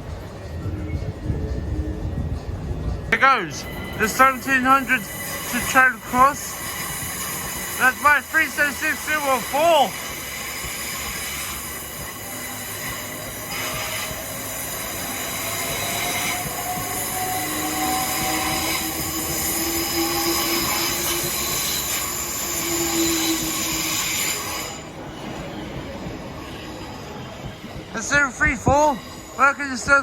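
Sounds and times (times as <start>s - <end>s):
electric train passing: 0.0s - 30.0s
steady high-pitched tones: 0.4s - 10.3s.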